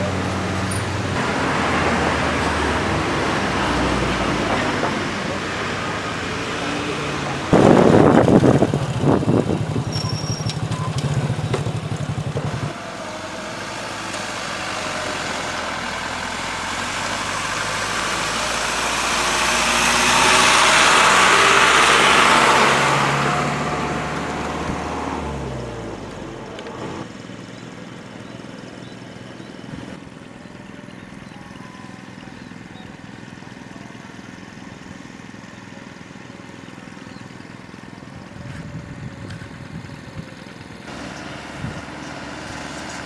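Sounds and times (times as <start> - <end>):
vehicle passing: 0.0 - 27.1
vehicle engine running close by: 0.0 - 43.0.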